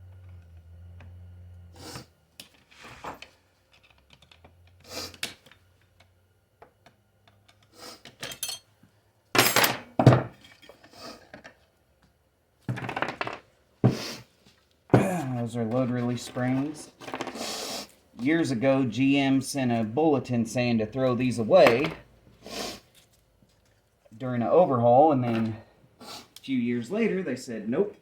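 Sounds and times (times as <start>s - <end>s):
metal parts clinking and clattering: 7.4s - 8.7s, 9.4s - 10.8s.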